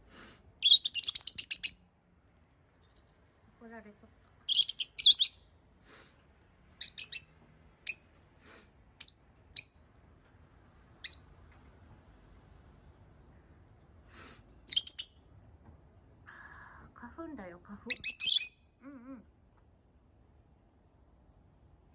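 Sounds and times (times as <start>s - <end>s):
lovebirds chirping: 0.6s - 1.8s, 4.4s - 5.5s, 6.8s - 8.2s, 11.0s - 11.4s, 14.7s - 15.2s, 17.9s - 18.6s.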